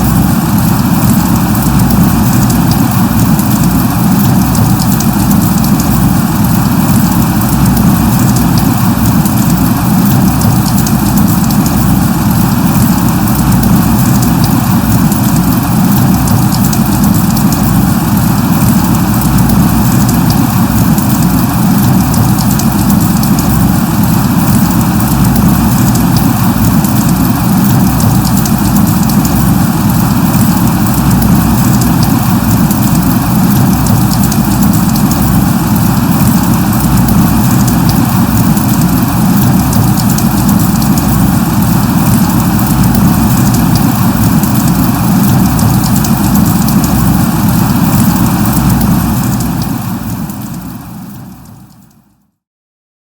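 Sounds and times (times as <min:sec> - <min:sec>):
constant low rumble: 0:00.0 - 0:51.4
light rain falling: 0:00.0 - 0:52.0.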